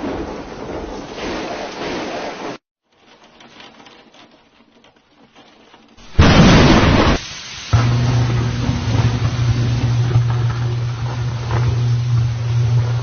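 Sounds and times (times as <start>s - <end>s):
rain pattering: 2.9s - 13.0s
heavy rain hiss: 6.0s - 13.0s
loud burst of noise: 6.1s - 13.0s.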